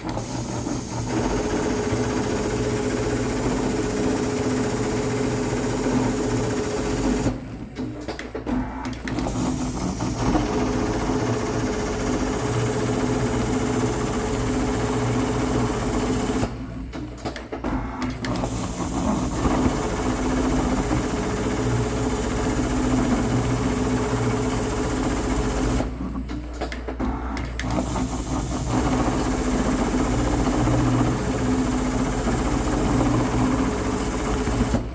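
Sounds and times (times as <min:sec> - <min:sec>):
sewing machine sewing: 0:00.0 - 0:07.4, 0:08.1 - 0:34.9.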